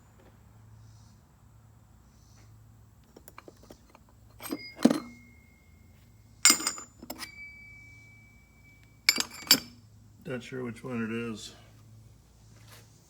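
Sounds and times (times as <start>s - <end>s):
metal hand tools clanking: 3.2s - 5.7s, 6.4s - 9.8s.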